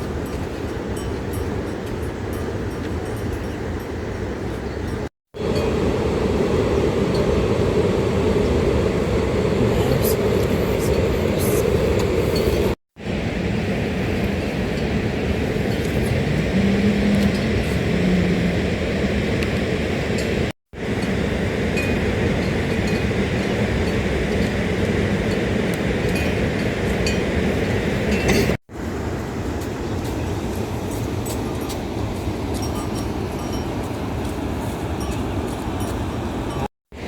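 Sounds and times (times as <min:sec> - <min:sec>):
drips and clinks: 0:31.1 - 0:34.0.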